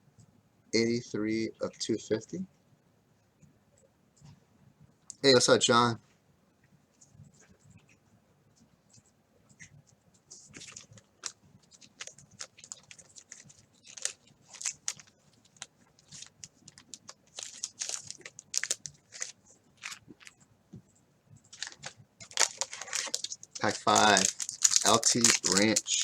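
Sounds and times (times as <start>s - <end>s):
trading cards and wrappers crinkling: 10.3s - 20.4s, 21.5s - 26.0s.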